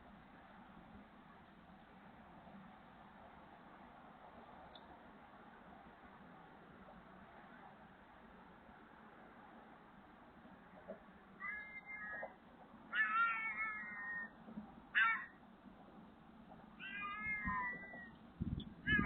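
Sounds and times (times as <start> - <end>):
cat meowing: 11.4 - 14.3, 15.0 - 15.3, 16.8 - 18.2.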